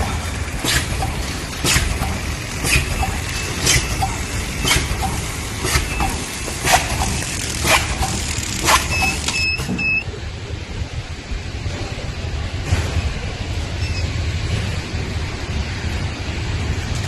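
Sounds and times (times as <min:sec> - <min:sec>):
machine clacking: 0:00.0 - 0:09.8
machine low rumble: 0:00.0 - 0:17.0.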